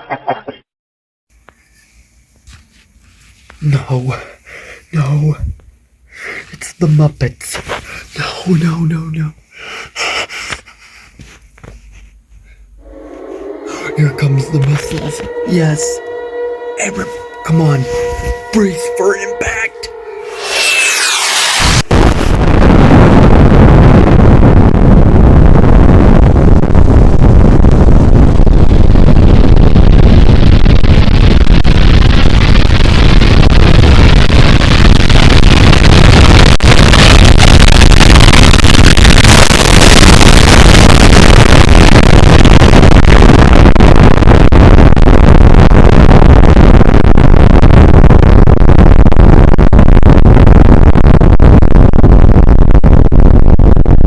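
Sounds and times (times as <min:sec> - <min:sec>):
explosion rumble: 0:12.8 - 0:54.0.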